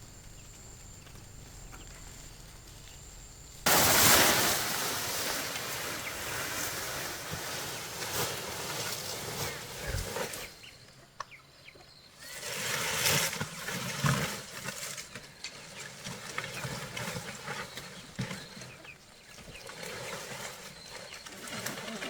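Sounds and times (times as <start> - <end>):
open fire crackling: 0.0 - 10.6.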